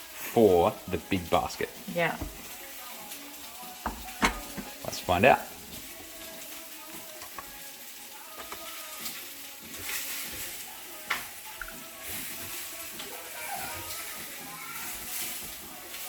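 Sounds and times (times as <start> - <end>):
coffee trickling and hissing: 0.0 - 16.0.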